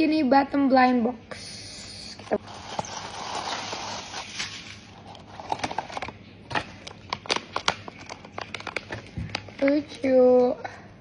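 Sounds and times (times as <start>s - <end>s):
packaging rustling: 2.3s - 9.9s
sharp clicks and crinkles: 2.6s - 9.9s.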